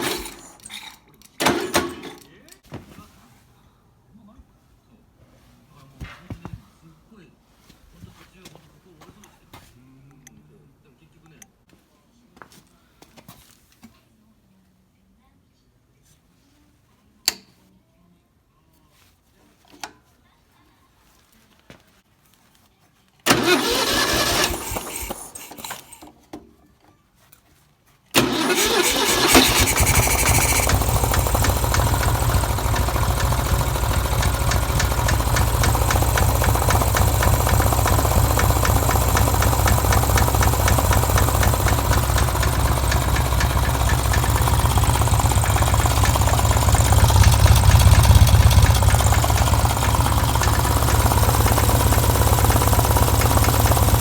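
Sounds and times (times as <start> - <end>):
engine starting and running: 0.0 - 2.3, 23.3 - 26.2, 28.2 - 54.0.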